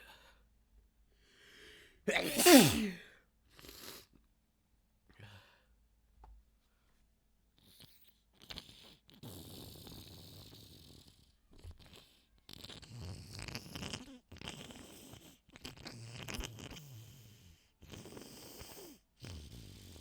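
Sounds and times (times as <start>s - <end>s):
person sniffling and breathing hard: 1.3s - 4.1s
wet snorts: 2.1s - 3.0s.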